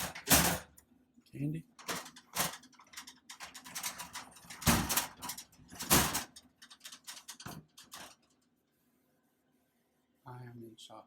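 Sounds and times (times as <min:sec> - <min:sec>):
small clicks and rattles: 0:00.0 - 0:00.8, 0:01.8 - 0:08.6.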